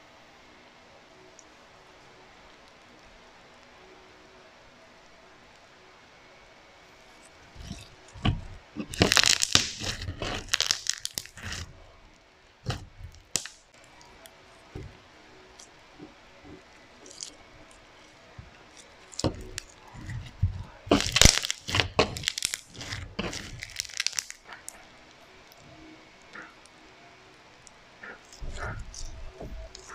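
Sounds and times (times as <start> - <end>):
slime crackling pops: 7.6 - 11.7, 12.7 - 13.6, 18.4 - 24.8.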